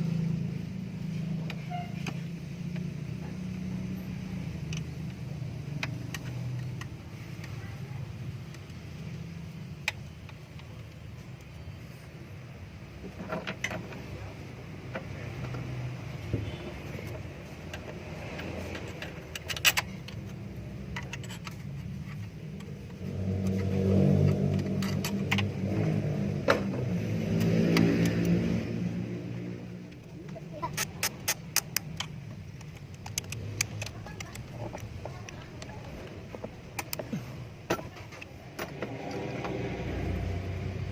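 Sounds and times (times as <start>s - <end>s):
sharp clicks: 29.9s - 37.1s.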